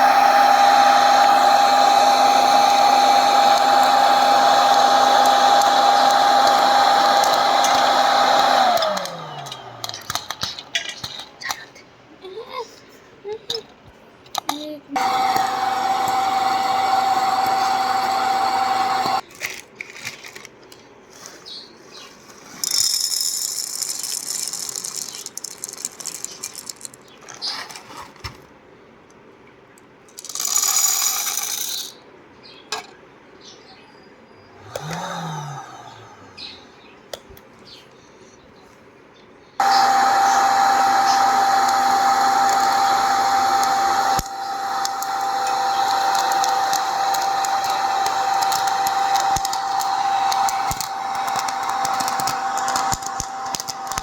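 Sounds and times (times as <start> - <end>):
popcorn machine whining hum: 0.0 - 11.6, 15.0 - 19.6, 34.6 - 36.9, 39.6 - 54.0.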